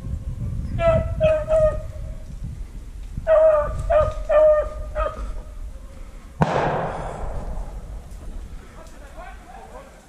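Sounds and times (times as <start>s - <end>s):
dogs baying: 3.3s - 6.0s.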